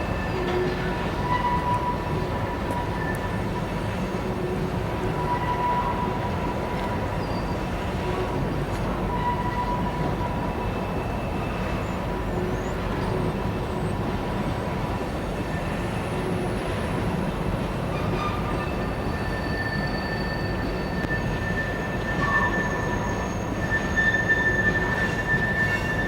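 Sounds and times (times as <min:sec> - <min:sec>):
freight train cars rumbling: 0:00.0 - 0:26.0
high wheel squeals: 0:17.8 - 0:26.0.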